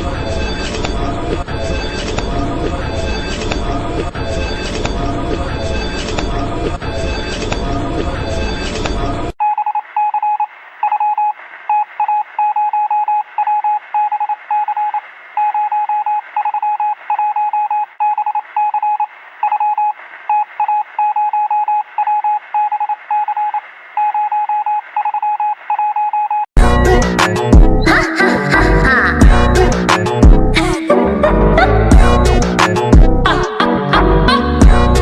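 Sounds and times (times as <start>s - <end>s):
rapid alarm beeps: 9.4s - 26.5s.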